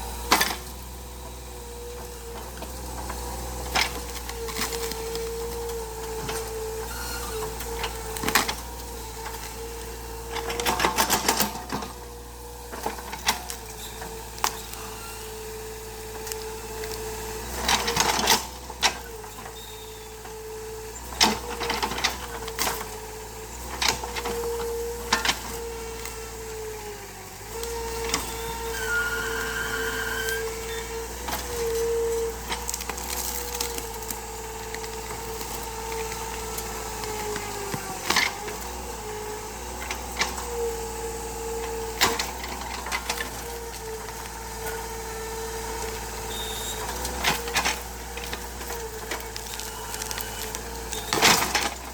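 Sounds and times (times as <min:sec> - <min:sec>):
excavator running with whine: 0:00.0 - 0:51.9
wood cracking and snapping: 0:16.1 - 0:18.6, 0:31.2 - 0:38.7, 0:41.6 - 0:51.9.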